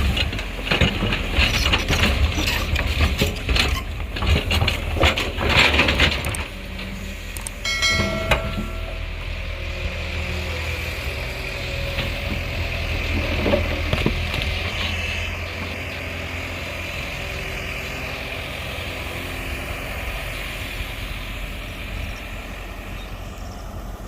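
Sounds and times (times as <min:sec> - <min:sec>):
clattering and scraping: 0:00.0 - 0:07.0
excavator diesel engine running: 0:00.0 - 0:24.0.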